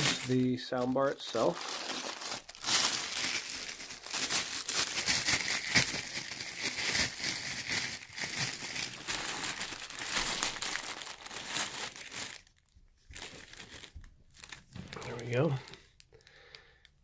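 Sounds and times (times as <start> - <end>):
plastic wrap crinkling: 0.0 - 16.9.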